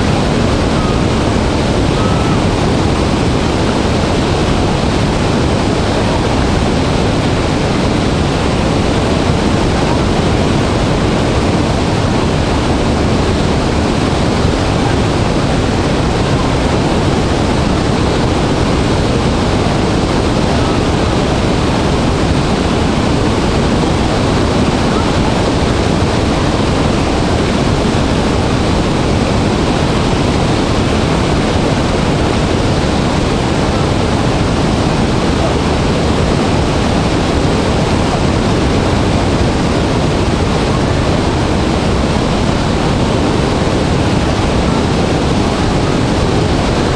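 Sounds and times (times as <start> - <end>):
waterfall rushing: 0.0 - 46.9.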